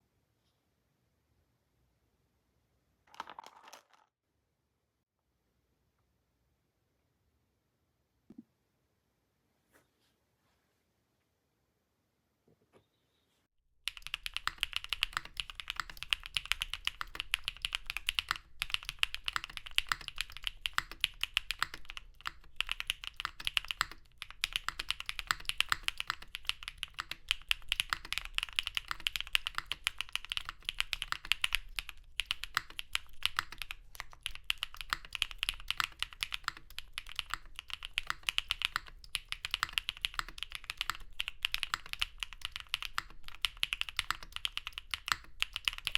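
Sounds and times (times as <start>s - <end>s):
mechanical keyboard typing: 13.9s - 45.9s.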